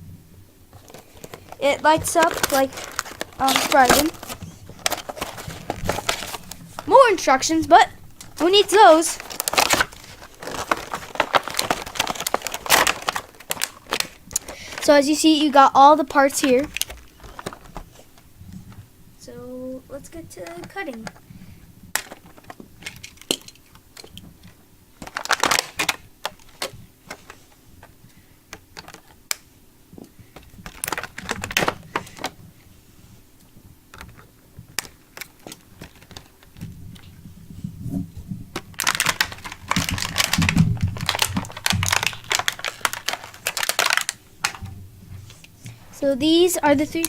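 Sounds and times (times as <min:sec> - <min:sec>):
plastic crinkling and rustling: 0:00.7 - 0:47.0
scissors snipping packaging: 0:00.8 - 0:07.1, 0:08.2 - 0:14.9.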